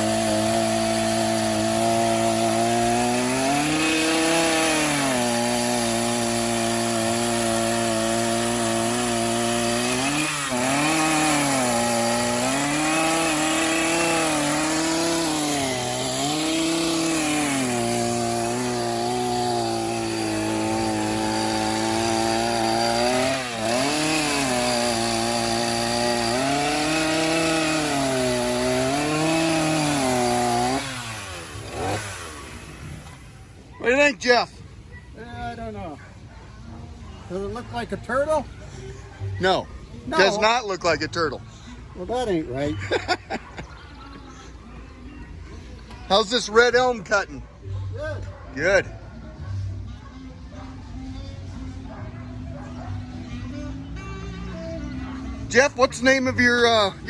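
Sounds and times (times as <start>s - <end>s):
chainsaw cutting wood: 0.0s - 33.5s.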